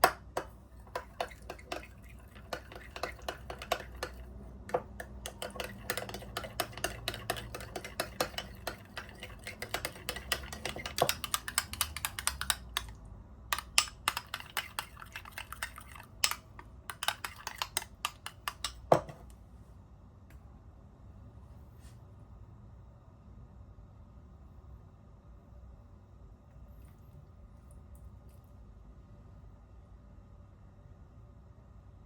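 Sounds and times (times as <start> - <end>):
utensils clicking against dishes: 0.9 - 12.9, 13.6 - 18.9.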